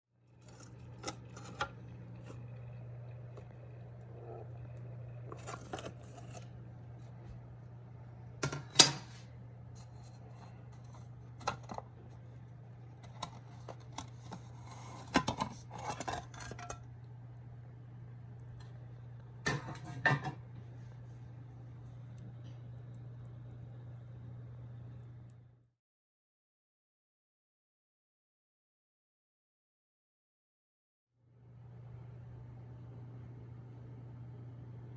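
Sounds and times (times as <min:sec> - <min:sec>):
steady low hum: 0:00.3 - 0:25.6.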